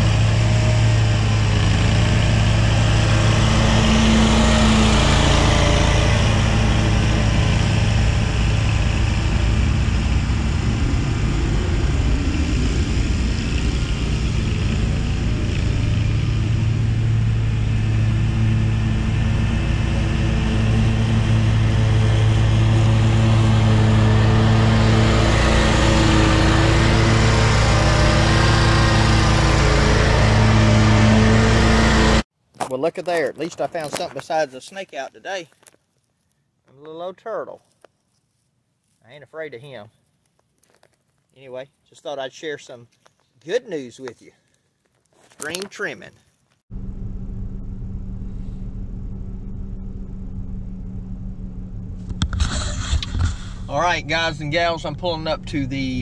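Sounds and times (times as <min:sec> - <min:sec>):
riding lawn mower engine: 0:00.0 - 0:32.2, 0:46.7 - 0:56.0.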